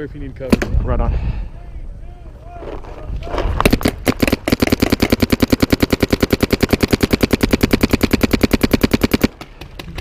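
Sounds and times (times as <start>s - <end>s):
paintball marker rapid firing: 3.6s - 10.0s.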